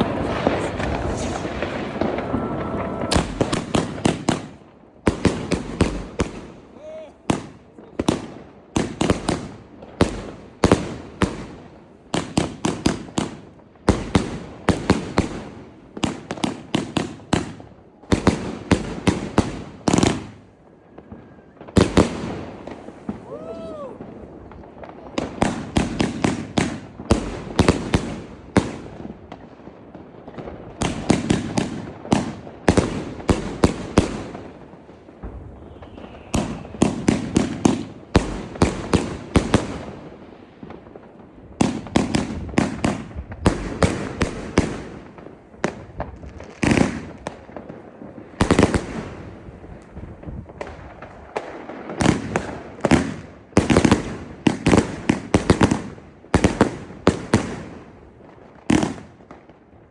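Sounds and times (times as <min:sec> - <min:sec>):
firework bangers exploding: 0:00.0 - 0:11.6, 0:21.6 - 0:57.9.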